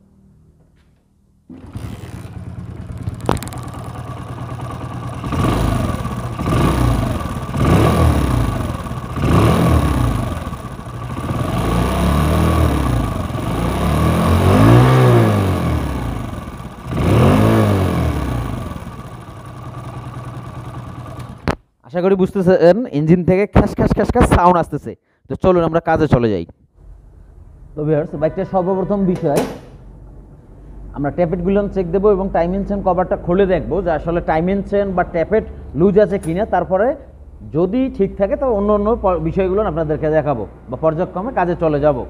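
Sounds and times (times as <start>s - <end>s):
harsh rasping engine noise: 1.5s - 21.6s
motorcycle engine revving: 1.5s - 21.6s.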